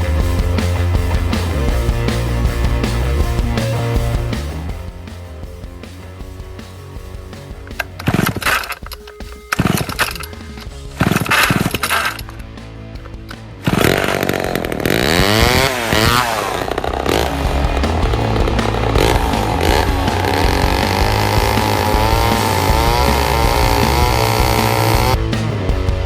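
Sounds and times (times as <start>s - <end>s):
chainsaw engine revving: 13.6s - 25.9s.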